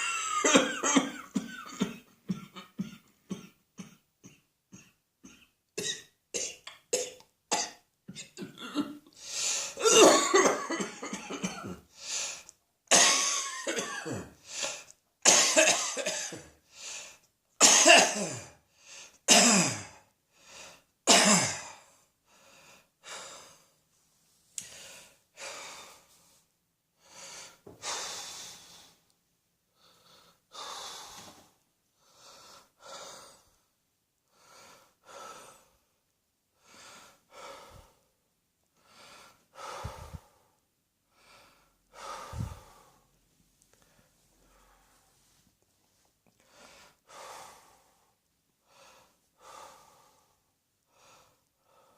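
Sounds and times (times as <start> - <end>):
person coughing: 0.0 - 9.1, 9.8 - 11.8, 12.9 - 14.4, 15.3 - 16.6, 17.6 - 18.6, 19.3 - 20.0, 21.1 - 21.8
heavy wheezing breaths: 38.8 - 43.1, 46.4 - 51.9.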